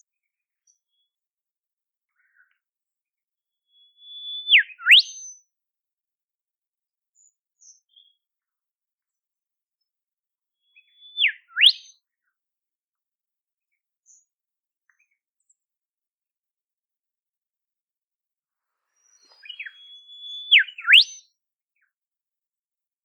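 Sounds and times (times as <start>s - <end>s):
bird whistling phrases: 3.8s - 5.3s, 10.8s - 11.9s, 19.1s - 21.2s
faint bird notes: 19.0s - 21.0s.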